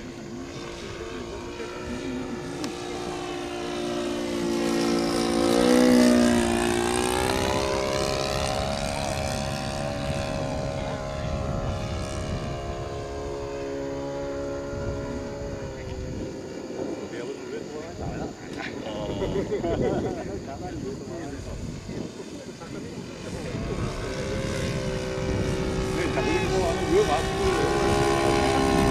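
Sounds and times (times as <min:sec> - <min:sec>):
model plane engine flying past: 0:00.0 - 0:28.9.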